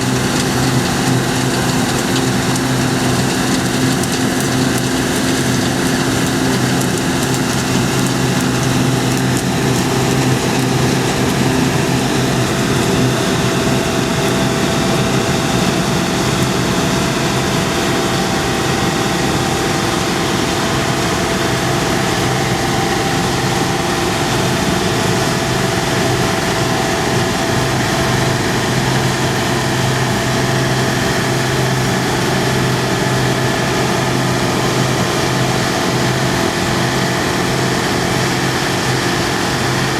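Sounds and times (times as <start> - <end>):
diesel engine running: 0.0 - 39.9.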